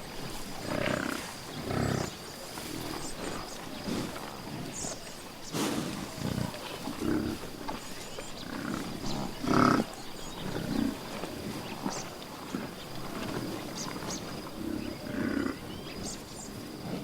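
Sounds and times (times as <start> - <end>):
large animal low calls: 8.4 - 16.2.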